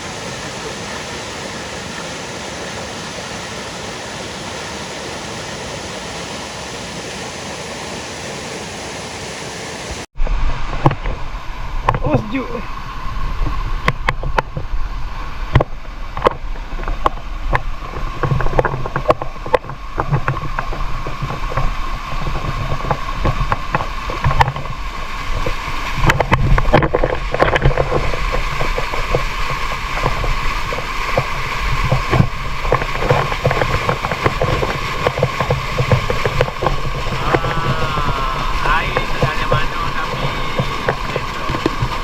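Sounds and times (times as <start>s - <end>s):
water rushing and splashing: 0.0s - 42.0s
wind buffeting: 10.0s - 42.0s
small splashes and knocks: 15.4s - 42.0s.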